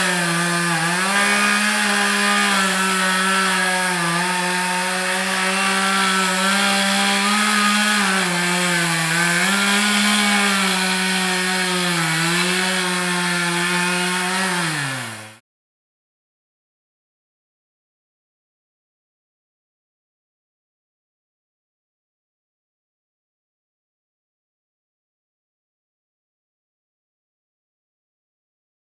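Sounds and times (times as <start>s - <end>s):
chainsaw cutting wood: 0.0s - 15.4s.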